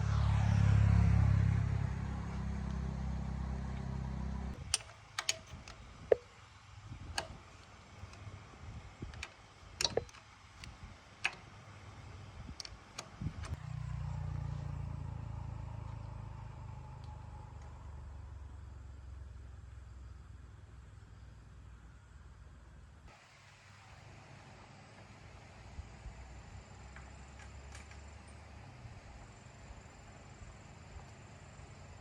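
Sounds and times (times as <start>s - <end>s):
sharp metallic clicks and taps: 4.6s - 6.4s, 7.1s - 8.4s, 9.0s - 11.6s
motorbike engine running: 12.5s - 19.7s.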